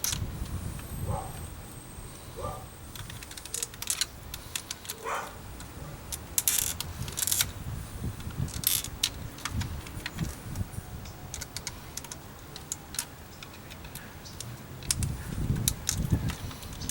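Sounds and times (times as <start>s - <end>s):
plastic clicks and scraping: 0.0s - 1.5s, 2.9s - 7.6s, 8.2s - 16.9s.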